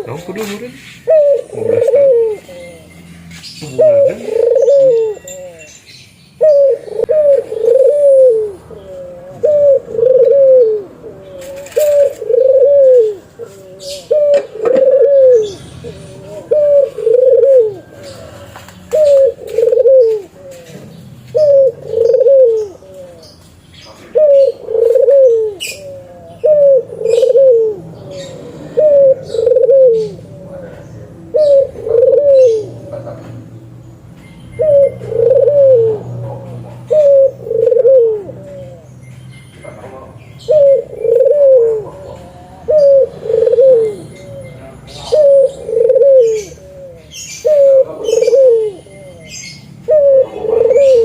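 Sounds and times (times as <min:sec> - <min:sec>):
dove cooing: 0:00.0 - 0:05.7, 0:06.4 - 0:33.8, 0:34.5 - 0:39.0, 0:39.7 - 0:51.0.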